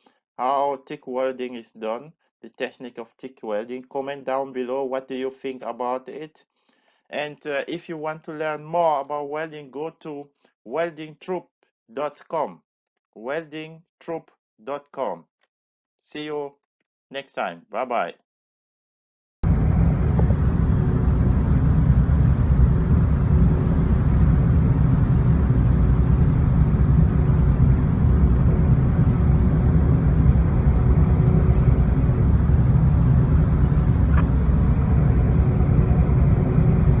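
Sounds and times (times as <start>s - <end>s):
loud low rumble: 19.4s - 37.0s
faint constant hum: 19.5s - 37.0s.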